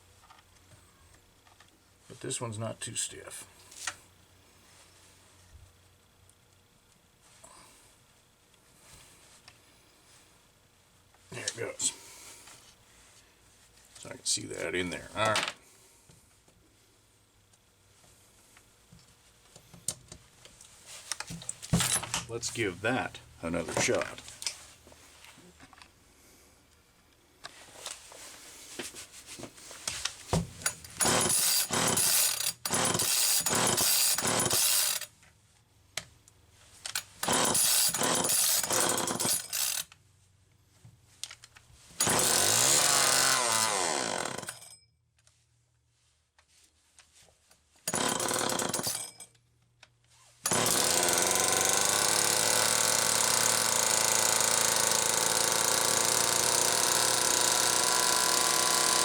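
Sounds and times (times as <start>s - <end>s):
chainsaw engine running fast: 31.0s - 35.0s, 37.2s - 39.8s, 42.0s - 44.5s, 50.5s - 59.0s.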